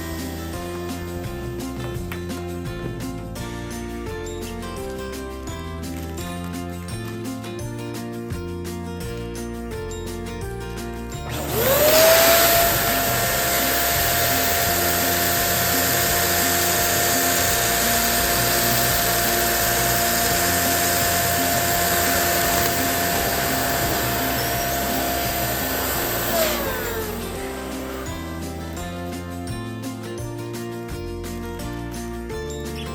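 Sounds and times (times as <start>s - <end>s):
electric balloon pump whining: 0.0s - 3.8s, 11.2s - 29.9s.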